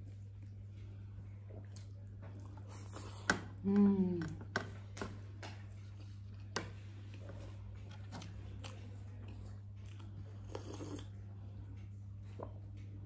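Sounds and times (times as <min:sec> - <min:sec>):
steady low hum: 0:00.0 - 0:13.0
person crunching and chewing: 0:08.0 - 0:11.1.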